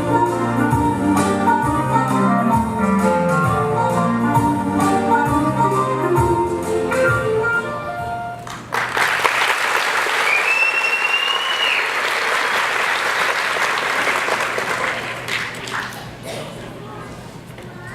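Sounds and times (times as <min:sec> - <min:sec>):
music: 0:00.0 - 0:08.6
audience applause: 0:08.4 - 0:16.2
long whistle from crowd: 0:10.2 - 0:12.1.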